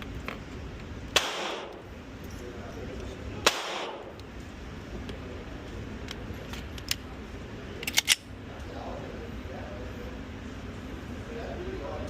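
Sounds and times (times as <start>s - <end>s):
pistol metallic clicks: 7.8s - 8.3s.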